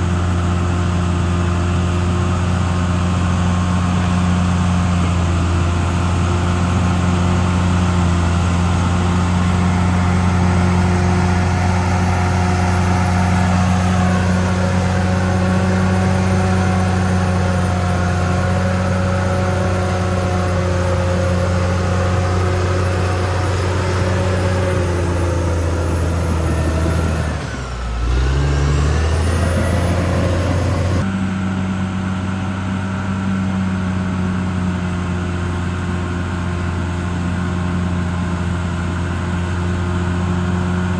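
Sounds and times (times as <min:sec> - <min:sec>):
bulldozer diesel engine running: 0:00.0 - 0:40.9.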